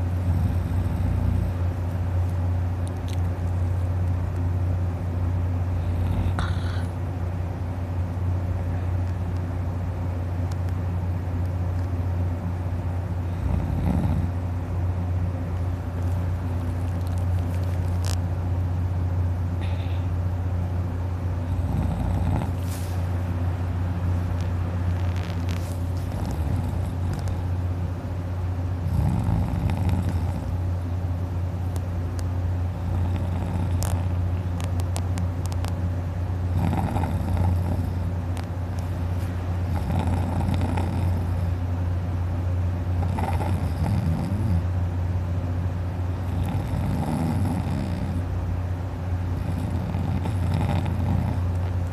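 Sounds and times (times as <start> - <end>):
steady low hum: 0.0 - 51.9
man snoring heavily: 0.2 - 1.6, 5.9 - 7.0, 13.3 - 14.4, 21.5 - 22.8, 26.0 - 27.3, 28.8 - 30.6, 32.8 - 34.0, 36.5 - 38.1, 39.7 - 41.5, 43.0 - 44.7, 46.2 - 48.3, 49.4 - 51.5.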